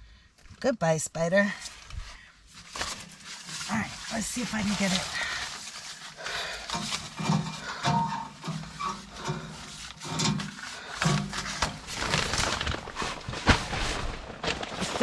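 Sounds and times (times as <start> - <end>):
heavy breathing: 5.1 - 6.8.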